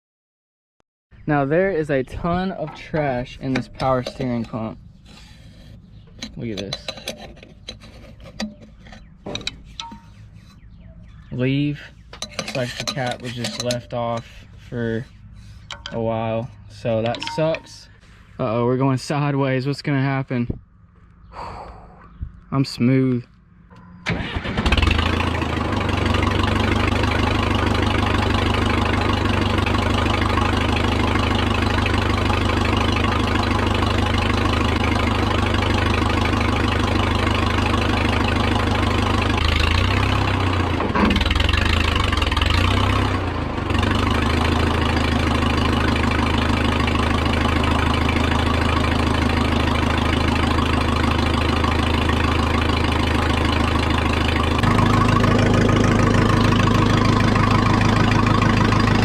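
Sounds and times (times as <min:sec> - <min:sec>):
backhoe engine idling: 0:07.5 - 0:18.3, 0:23.7 - 0:59.0.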